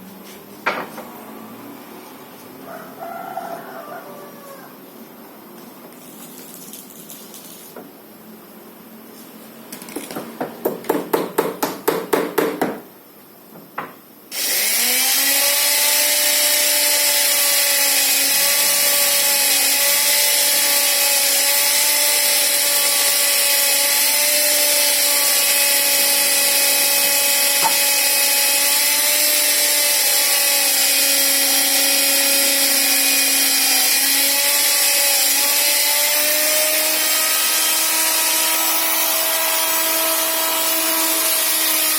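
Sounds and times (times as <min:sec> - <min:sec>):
circular saw motor whining: 0:14.3 - 0:41.9.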